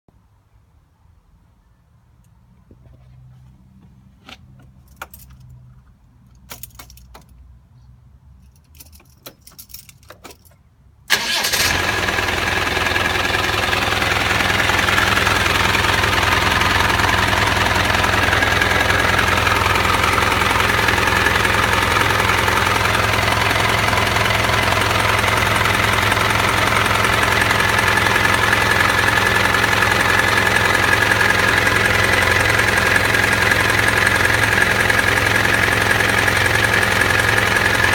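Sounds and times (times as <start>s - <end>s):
keys jangling: 4.8s - 5.6s, 6.2s - 7.4s, 8.4s - 10.6s
car engine starting and idling: 10.1s - 37.9s.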